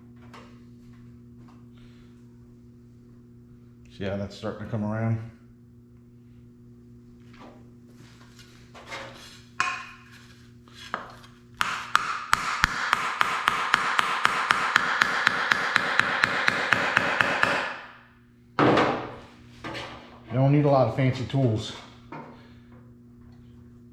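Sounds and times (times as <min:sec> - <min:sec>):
hammer beating sheet metal: 0:11.6 - 0:18.0.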